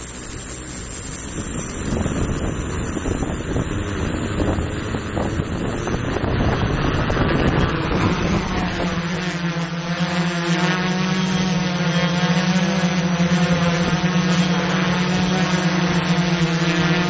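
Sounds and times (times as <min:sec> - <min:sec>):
drone propellers humming: 0:00.0 - 0:17.0
wind buffeting microphone: 0:01.2 - 0:09.3.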